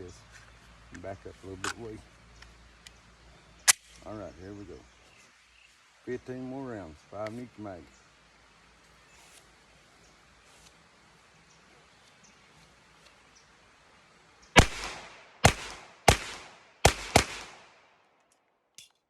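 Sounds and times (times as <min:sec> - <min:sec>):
pistol shots with echo: 0:14.6 - 0:18.0.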